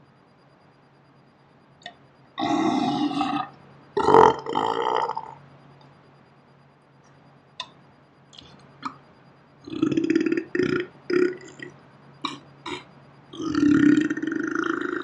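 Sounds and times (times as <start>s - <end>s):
man burping: 2.4s - 5.4s, 9.7s - 15.0s.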